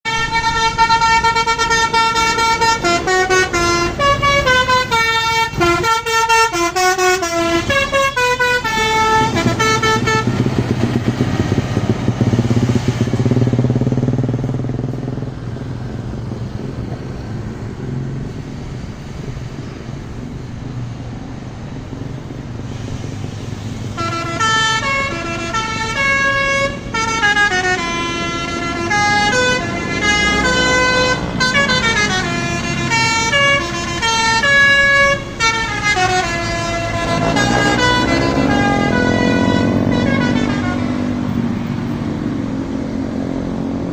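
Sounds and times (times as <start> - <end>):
musical air horn melody: 0.1 - 10.6, 24.0 - 41.2
bus engine rumble: 0.1 - 43.9.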